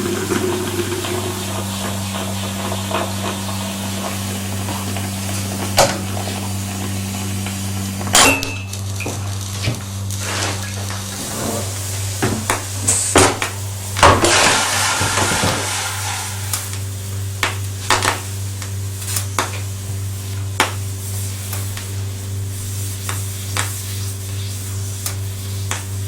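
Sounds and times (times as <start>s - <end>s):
hissing gurgling burst: 0.0s - 6.3s, 11.1s - 17.0s
coffee machine humming: 0.0s - 22.8s.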